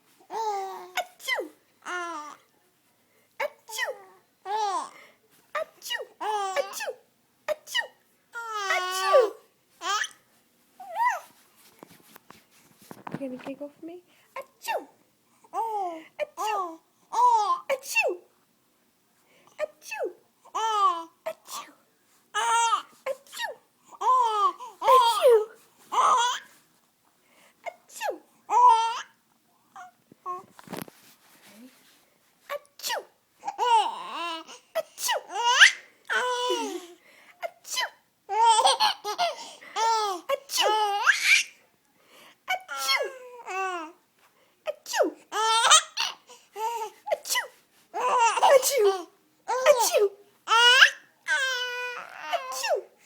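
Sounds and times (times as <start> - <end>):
baby giggling and babbling: 32.8 - 41.4.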